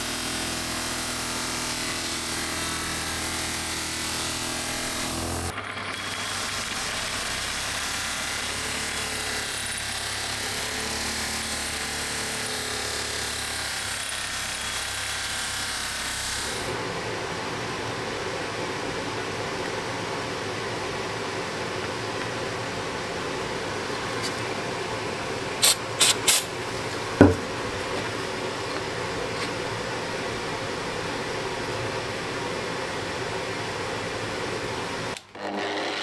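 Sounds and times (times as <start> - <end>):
power tool running: 0.0 - 17.1, 25.6 - 36.0.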